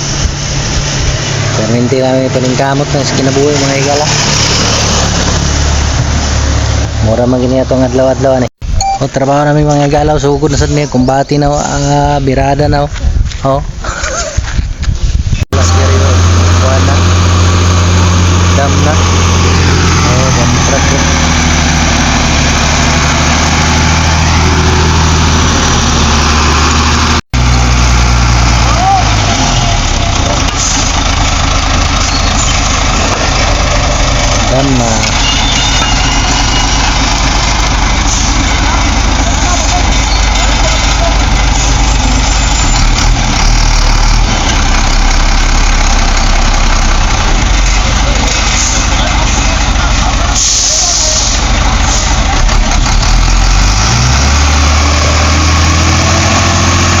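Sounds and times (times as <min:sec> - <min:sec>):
diesel engine idling: 0:15.5 - 0:57.0.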